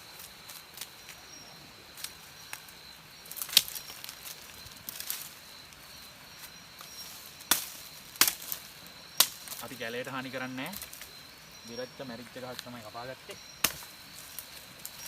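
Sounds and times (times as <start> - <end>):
axe chopping into tree: 13.6 - 13.8.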